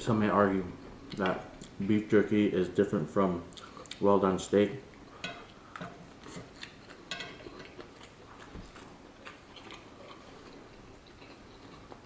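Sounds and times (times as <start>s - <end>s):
person chewing food: 3.5s - 4.0s, 5.0s - 12.0s.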